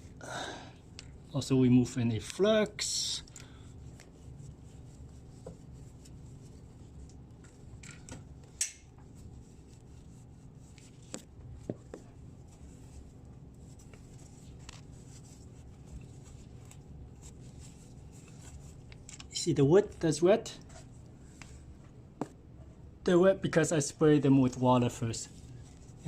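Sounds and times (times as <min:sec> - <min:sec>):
steady low hum: 0:00.0 - 0:26.0
wet rag wiping pipe: 0:02.4 - 0:07.7, 0:08.3 - 0:19.1, 0:25.3 - 0:26.0.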